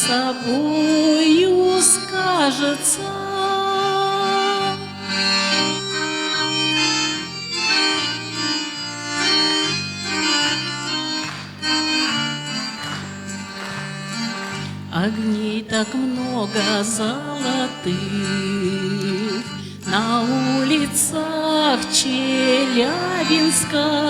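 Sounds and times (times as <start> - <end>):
accordion playing: 0.0 - 24.0.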